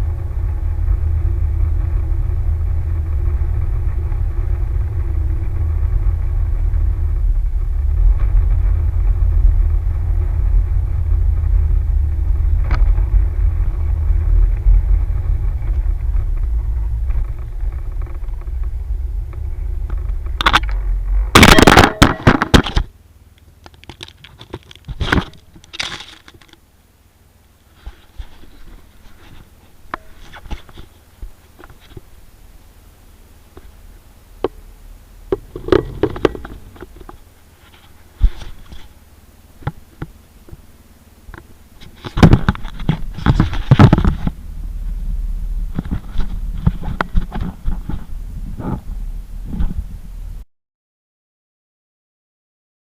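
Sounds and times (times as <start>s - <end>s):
loud rattling clatter: 0.0s - 22.9s
vehicle engine rumbling: 0.0s - 50.4s
small clicks and knocks: 22.0s - 26.6s.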